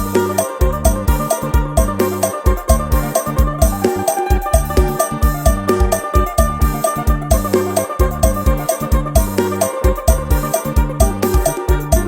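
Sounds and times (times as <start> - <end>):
plucked lute melody: 0.0 - 12.0
steady drum beat: 0.0 - 12.0.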